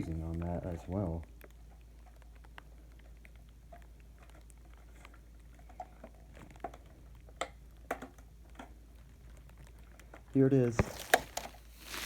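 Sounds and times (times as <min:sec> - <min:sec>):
packaging rustling and clicking: 0:10.7 - 0:12.0.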